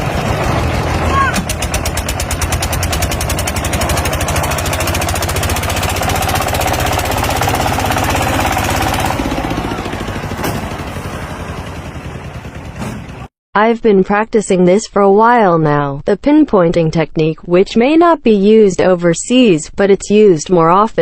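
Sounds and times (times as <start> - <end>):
machine rapid knocking: 0.0 - 13.2.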